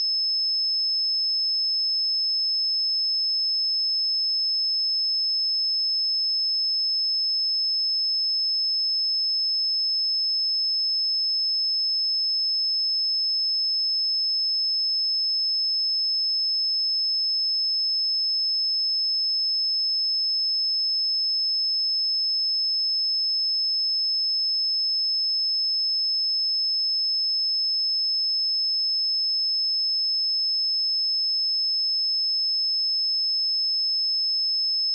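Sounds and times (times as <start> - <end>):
high-pitched sine test tone: 28.0 - 34.9.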